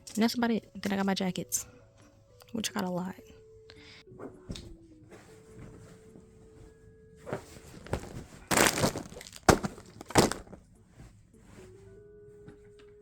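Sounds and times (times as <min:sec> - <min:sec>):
handling knocks and clatters: 0:07.3 - 0:10.7.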